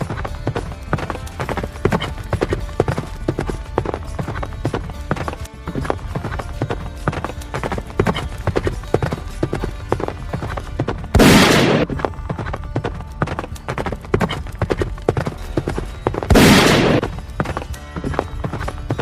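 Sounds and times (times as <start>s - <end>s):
galloping horse hoofbeats: 0.0s - 19.0s
loud gunshot: 11.2s - 11.9s, 16.3s - 17.1s.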